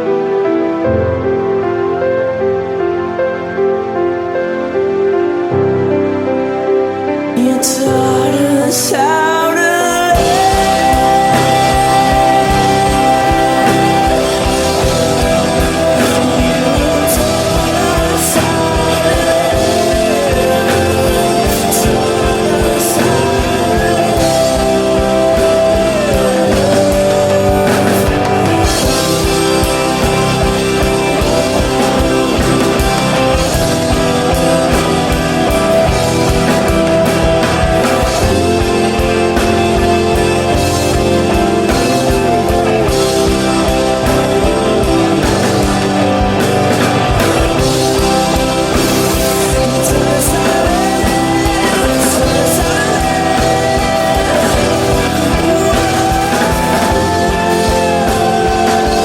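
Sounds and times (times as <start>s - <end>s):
electric guitar chords: 0.0s - 59.0s
rock band playing: 0.0s - 59.0s
drum beat: 10.2s - 59.0s.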